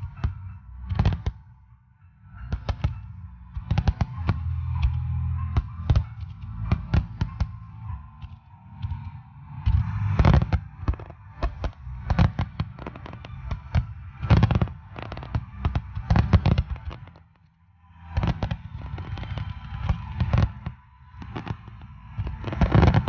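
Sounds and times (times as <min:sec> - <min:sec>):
fireworks bangs and crackles: 0:02.4 - 0:09.0, 0:09.6 - 0:17.2, 0:18.1 - 0:23.0.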